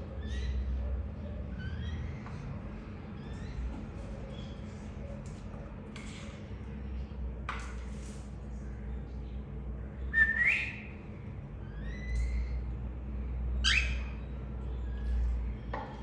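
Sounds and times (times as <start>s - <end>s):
loud rising whistled bird call: 13.6s - 14.1s
lovebirds chirping: 13.6s - 15.4s.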